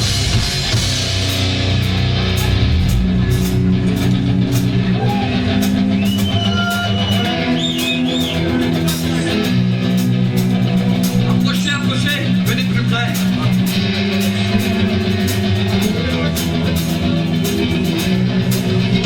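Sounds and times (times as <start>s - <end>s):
live rock band playing: 0.0s - 19.0s.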